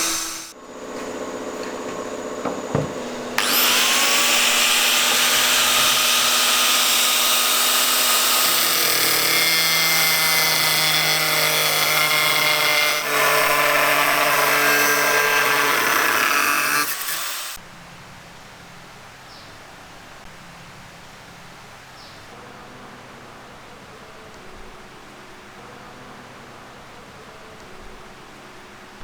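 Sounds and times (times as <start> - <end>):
power tool whining: 0.0 - 17.6.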